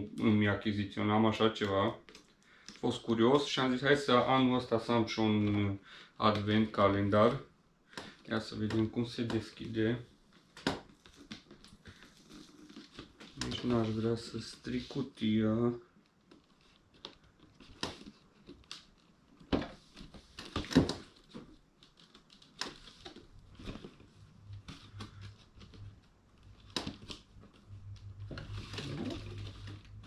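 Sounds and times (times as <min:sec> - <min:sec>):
cardboard rustling scrape: 0:10.9 - 0:15.1, 0:16.4 - 0:30.0.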